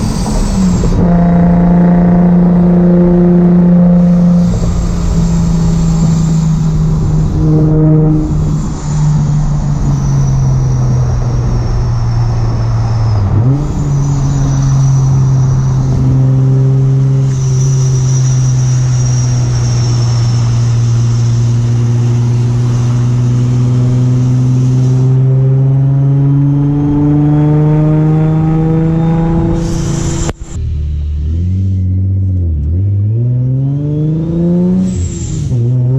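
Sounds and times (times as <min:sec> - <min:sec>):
car engine droning: 0:00.0 - 0:35.9.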